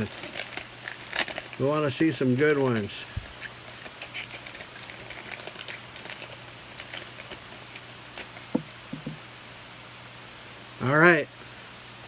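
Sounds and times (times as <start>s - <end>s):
wrapper crinkling: 0.0s - 9.2s.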